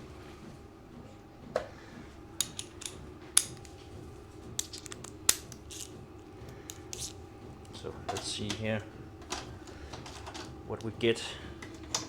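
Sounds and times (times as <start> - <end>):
faint steady hum: 0.0 - 12.0
metallic clicks of hand tools: 6.5 - 7.2.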